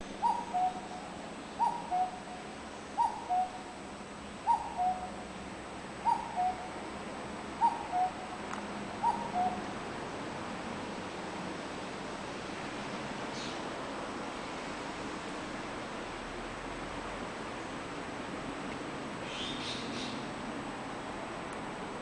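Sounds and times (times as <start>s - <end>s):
cuckoo calling: 0.2s - 3.8s, 4.4s - 5.2s, 6.0s - 6.8s, 7.6s - 8.4s, 9.0s - 9.7s.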